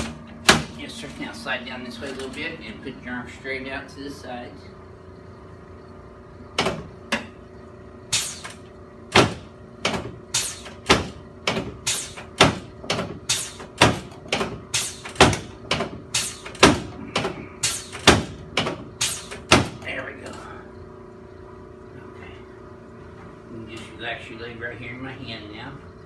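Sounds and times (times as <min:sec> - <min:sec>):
sharp slaps or knocks: 0:08.1 - 0:16.9, 0:17.6 - 0:19.8.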